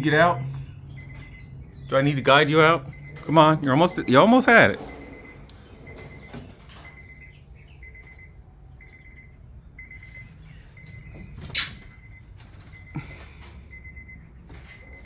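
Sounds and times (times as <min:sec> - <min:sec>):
bird chirping faintly: 0:09.9 - 0:12.0.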